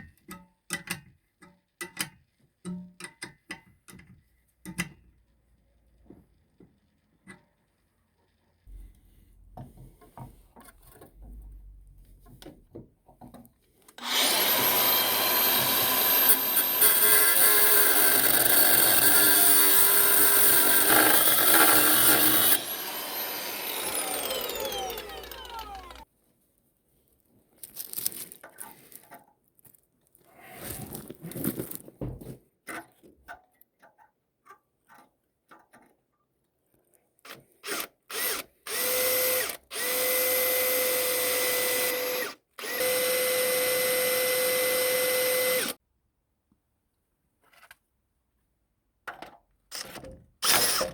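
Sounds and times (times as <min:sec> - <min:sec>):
drill whining in bursts: 0:14.0 - 0:26.0, 0:37.7 - 0:45.8, 0:50.4 - 0:50.9
power tool winding down: 0:14.0 - 0:26.0, 0:37.7 - 0:45.8, 0:50.4 - 0:50.9
clinks and handling noises: 0:27.4 - 0:32.0.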